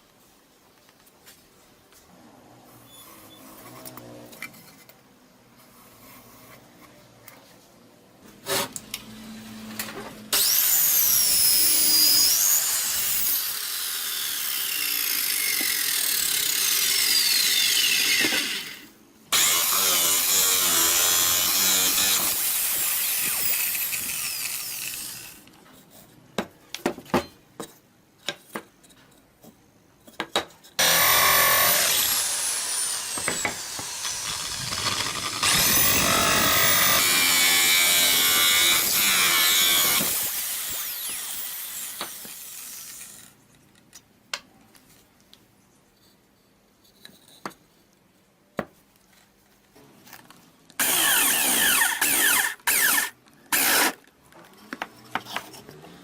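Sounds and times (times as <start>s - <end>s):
power tool whining on wood: 10.3s - 25.4s, 30.8s - 42.9s, 50.8s - 53.9s.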